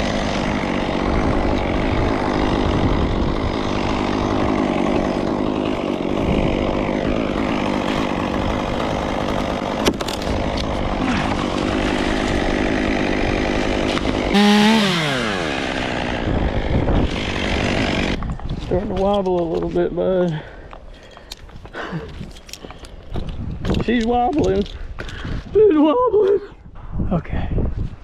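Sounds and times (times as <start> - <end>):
chainsaw cutting wood: 0.0 - 19.8.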